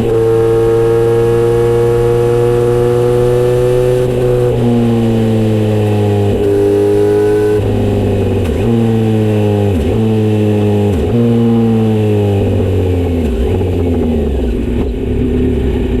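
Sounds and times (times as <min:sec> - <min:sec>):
motorcycle engine while riding: 0:00.0 - 0:16.0.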